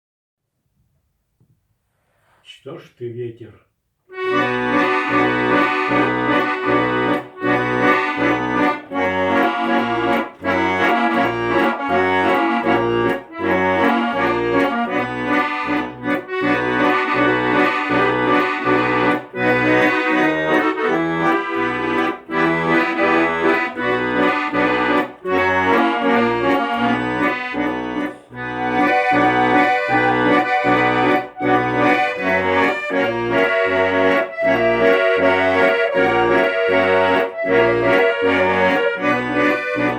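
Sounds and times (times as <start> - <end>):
instrumental music with pulsing bass: 4.2 - 39.9.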